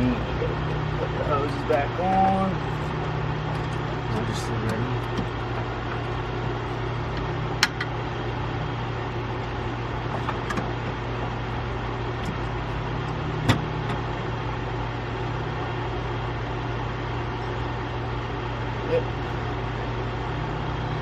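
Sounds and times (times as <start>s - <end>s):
low mechanical hum: 0.0s - 21.0s.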